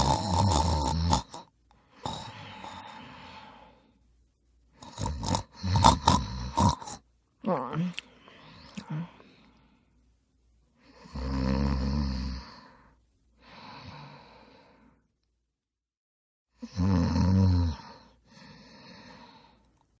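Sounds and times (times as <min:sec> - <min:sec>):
loud snores: 0:00.0 - 0:03.7, 0:04.8 - 0:07.0, 0:10.9 - 0:12.8, 0:16.6 - 0:19.6
quiet breath out: 0:01.7 - 0:04.1, 0:07.9 - 0:10.1, 0:12.3 - 0:15.1, 0:17.8 - 0:19.9.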